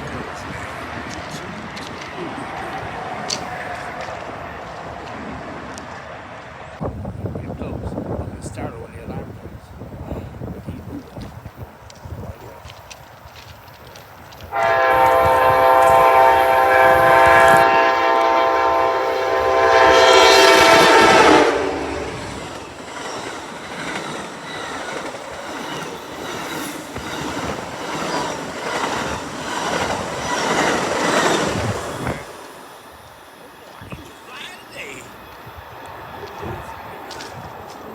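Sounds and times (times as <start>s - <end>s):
train wheels clacking on rails: 10.4s - 37.9s
train air horn chord: 14.5s - 22.4s.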